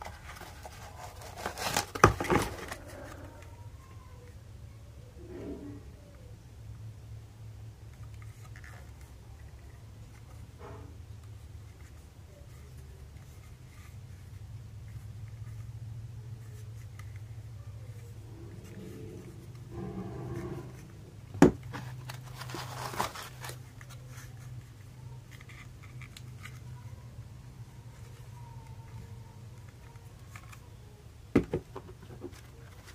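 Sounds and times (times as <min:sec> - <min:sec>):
packaging rustling and knocks: 0:00.0 - 0:02.9, 0:21.4 - 0:23.6
scraping rustle: 0:00.0 - 0:03.7, 0:08.0 - 0:30.8
low steady hum: 0:00.0 - 0:32.9.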